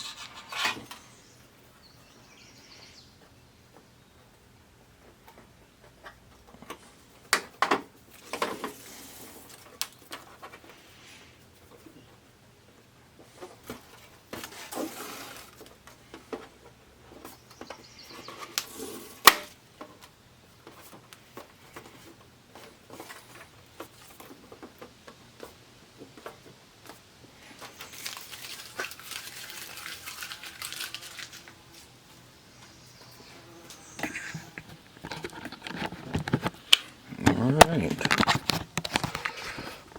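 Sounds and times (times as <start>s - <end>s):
tape rustling and crinkling: 13.2s - 16.2s, 17.2s - 39.9s.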